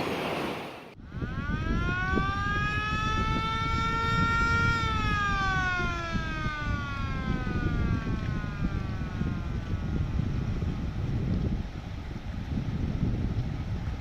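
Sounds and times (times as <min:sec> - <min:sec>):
continuous low rumble: 0:00.0 - 0:14.0
siren-like wail falling in pitch: 0:01.0 - 0:10.7.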